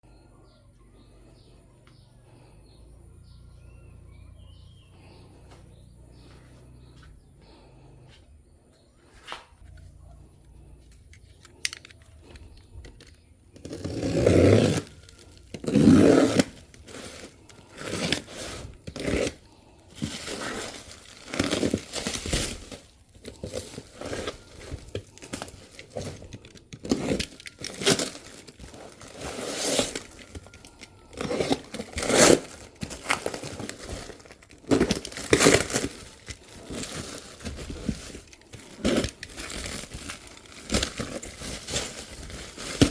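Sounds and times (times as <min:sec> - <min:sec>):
packaging tearing and crinkling: 0:11.5 - 0:42.9.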